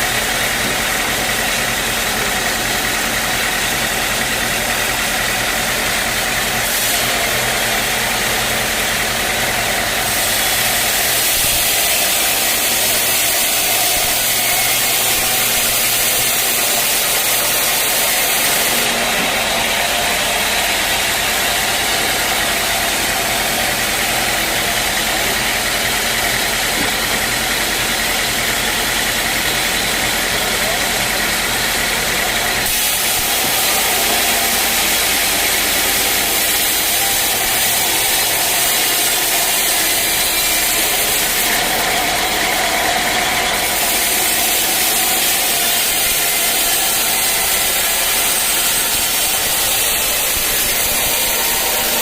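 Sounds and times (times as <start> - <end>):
sawmill engine running: 0.0 - 52.0.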